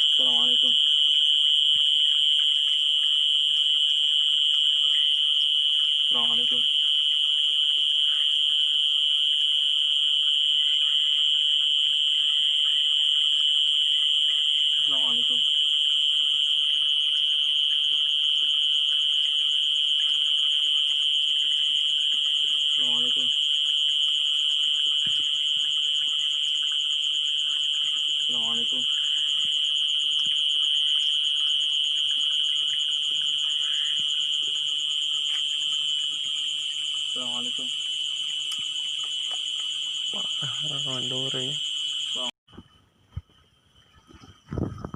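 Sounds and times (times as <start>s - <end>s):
crickets chorus: 0.0s - 44.9s
high-pitched whine: 6.1s - 6.7s, 22.4s - 23.3s, 37.1s - 37.8s, 38.5s - 43.3s.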